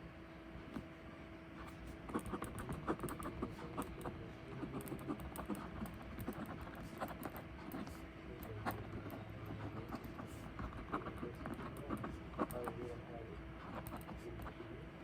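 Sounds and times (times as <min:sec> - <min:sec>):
faint steady hum: 0:00.0 - 0:15.0
computer keyboard typing: 0:02.0 - 0:12.8, 0:13.7 - 0:14.6.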